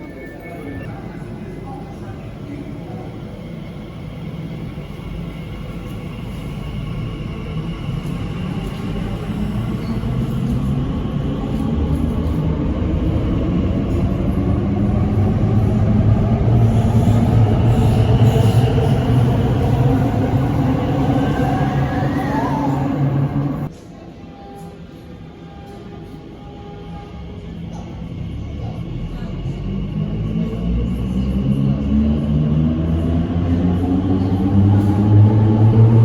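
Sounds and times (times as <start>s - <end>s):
electric train humming: 0.0s - 23.7s.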